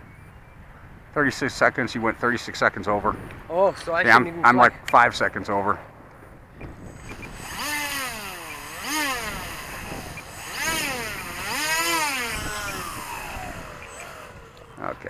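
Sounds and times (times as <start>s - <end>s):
model airplane motor whine: 6.8s - 15.0s.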